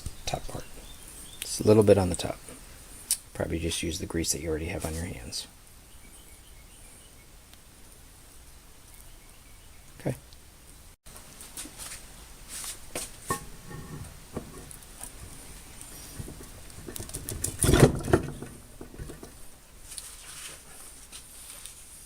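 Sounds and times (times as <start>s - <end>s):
metal parts clattering: 16.1s - 19.3s
metal parts clicking and knocking: 16.1s - 19.4s.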